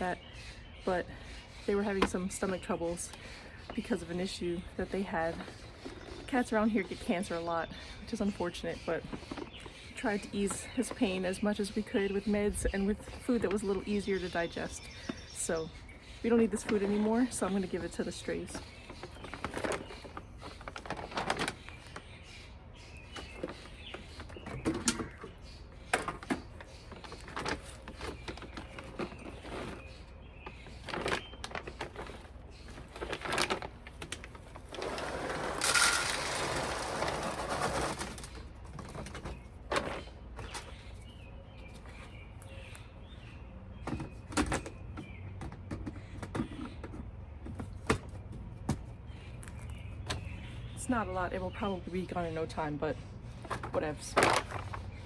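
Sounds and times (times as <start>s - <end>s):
small birds chirping: 0.0s - 55.0s
handling knocks and rustles: 16.5s - 22.0s, 23.1s - 42.8s, 53.4s - 55.0s
dry kibble pouring: 34.8s - 38.0s.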